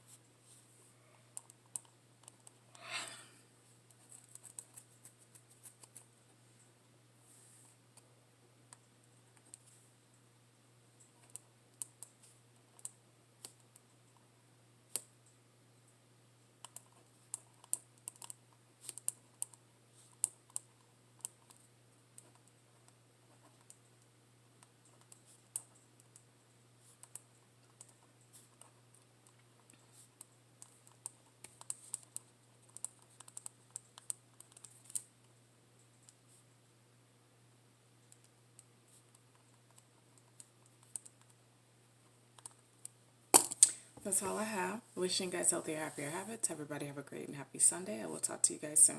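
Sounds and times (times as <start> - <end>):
faint steady low hum: 0.0 - 48.9
light clicks and taps of writing: 3.9 - 6.1, 11.0 - 14.3, 16.6 - 35.1, 38.1 - 41.4, 42.4 - 43.0.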